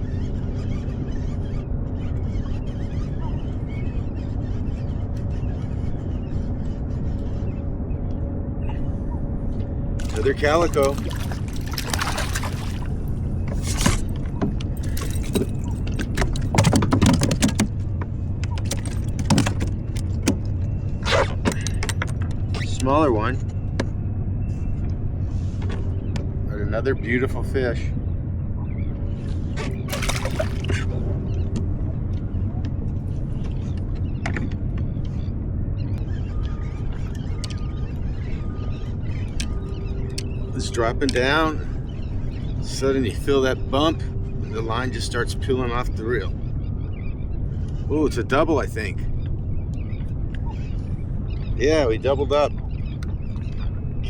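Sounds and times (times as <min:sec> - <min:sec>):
boat motor humming: 0:09.5 - 0:22.6, 0:28.2 - 0:34.3, 0:35.3 - 0:51.9
boat motor idling: 0:10.0 - 0:16.5
fishing gear clicking and rattling: 0:10.0 - 0:20.5, 0:29.9 - 0:30.9.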